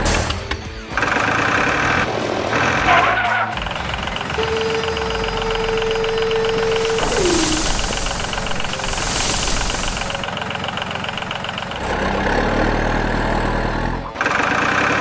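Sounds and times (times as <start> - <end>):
deeper engine note: 0.0 - 15.0
different engine sound: 0.0 - 15.0
engine idling with rattling tick: 7.9 - 15.0.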